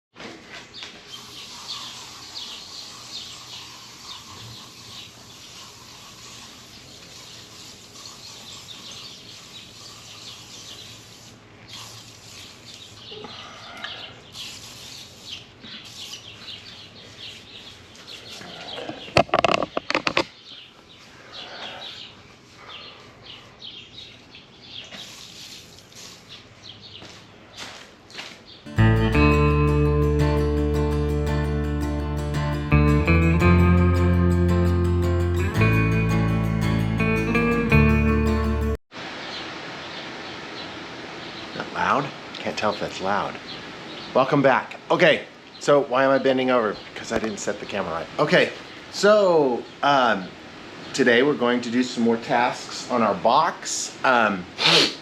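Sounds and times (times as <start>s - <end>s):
birds calling: 0.5s - 29.4s.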